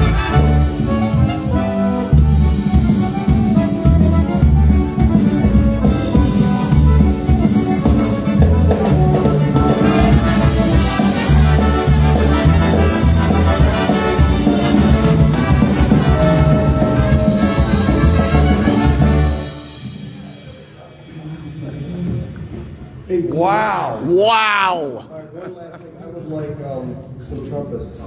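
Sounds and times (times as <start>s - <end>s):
brass polka band playing: 0.0s - 20.4s.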